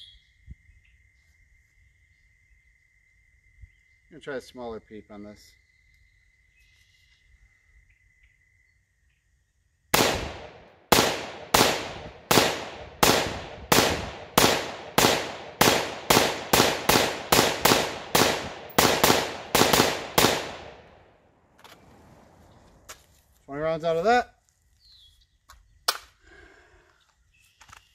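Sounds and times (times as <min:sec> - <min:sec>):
rifle gunshots: 0:09.9 - 0:21.0.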